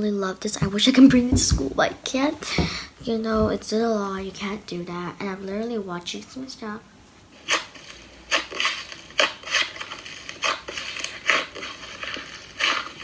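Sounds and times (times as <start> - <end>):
irregular clicks and knocks: 0.6 - 3.8
scuffing: 0.6 - 3.8.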